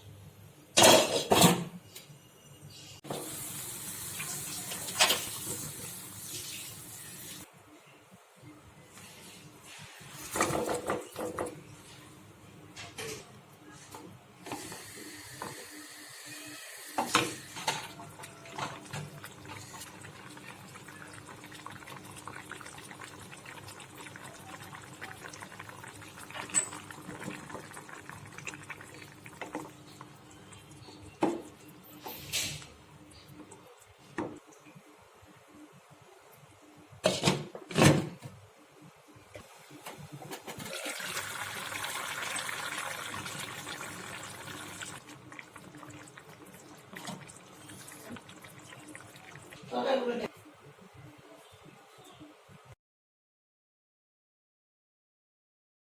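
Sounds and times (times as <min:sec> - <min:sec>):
kitchenware knocks and clinks: 0:00.8 - 0:01.8, 0:10.3 - 0:11.6
tap water running: 0:03.1 - 0:07.5, 0:16.8 - 0:30.2, 0:40.3 - 0:49.7.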